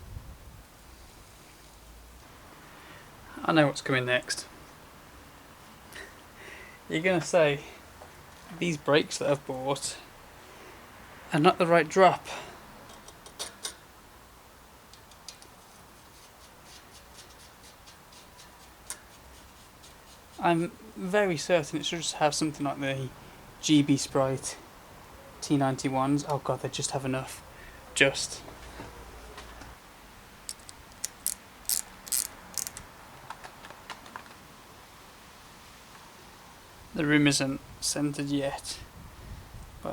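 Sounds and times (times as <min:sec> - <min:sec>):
bicycle brake clicks and taps: 0:30.5 - 0:32.9.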